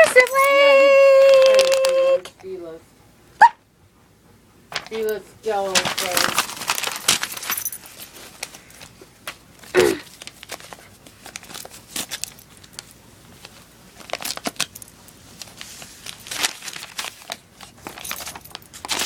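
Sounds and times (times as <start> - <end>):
paper rustling and crinkling: 1.2 - 2.0, 4.7 - 19.0.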